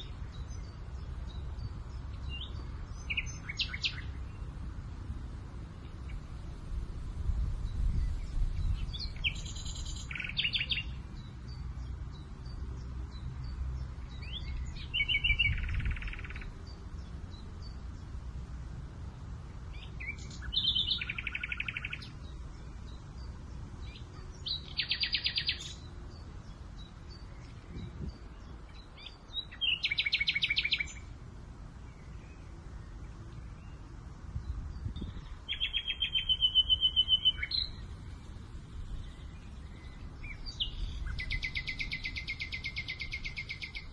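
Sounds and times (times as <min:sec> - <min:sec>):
songbird trilling: 0:00.0 - 0:04.5, 0:07.6 - 0:13.2, 0:14.1 - 0:17.8, 0:19.7 - 0:31.1, 0:34.7 - 0:38.1, 0:38.8 - 0:43.9
low wind rumble: 0:00.0 - 0:43.9.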